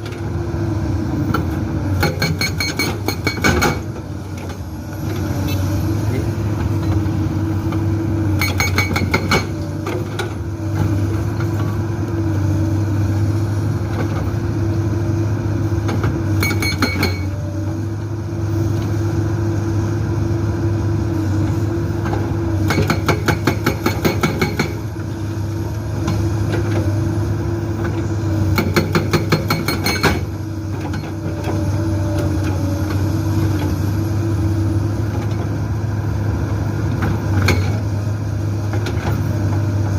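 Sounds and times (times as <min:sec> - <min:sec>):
diesel engine running: 0:00.0 - 0:39.9
hydraulic breaker hammering rock: 0:02.0 - 0:04.0, 0:08.4 - 0:09.7, 0:16.4 - 0:17.3, 0:22.6 - 0:24.9, 0:28.5 - 0:30.3.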